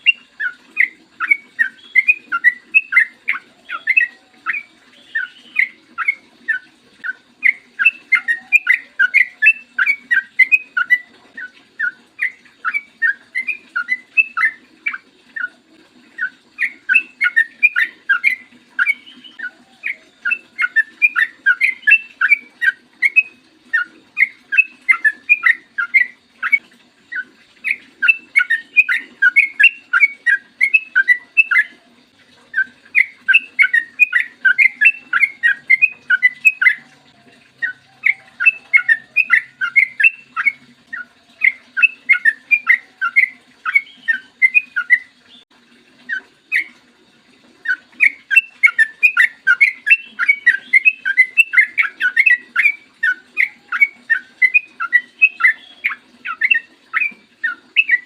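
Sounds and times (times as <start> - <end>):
bird singing chattering song: 0.0 - 15.6, 16.2 - 31.8, 32.5 - 45.5, 47.6 - 58.0.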